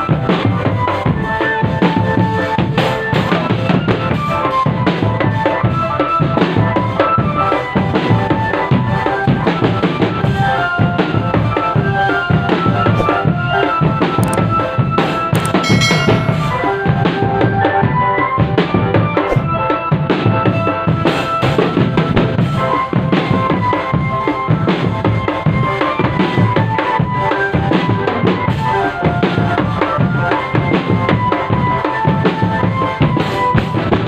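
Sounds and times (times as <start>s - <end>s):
held melody line: 15.4s - 17.0s.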